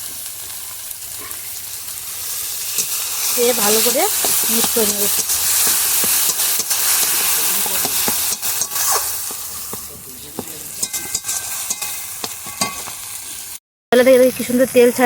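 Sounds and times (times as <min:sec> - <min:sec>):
paste sizzling in oil: 0:00.0 - 0:13.6
spatula scraping pan: 0:02.1 - 0:13.6
spatula clicking on pan: 0:04.1 - 0:09.8, 0:10.4 - 0:13.0.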